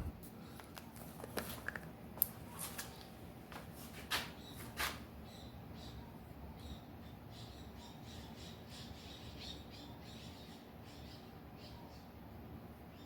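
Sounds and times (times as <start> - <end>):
soft rustles of handling: 0.2 - 5.0.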